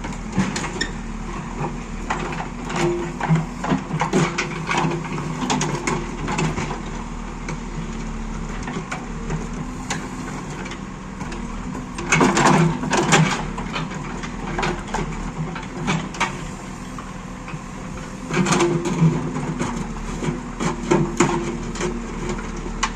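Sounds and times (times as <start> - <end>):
diesel engine running: 0.0 - 22.9.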